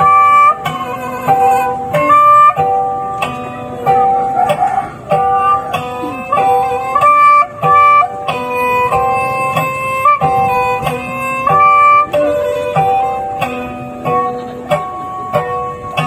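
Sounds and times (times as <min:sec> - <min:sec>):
bowed fiddle melody: 0:00.0 - 0:16.0
plucked strings: 0:00.0 - 0:16.0.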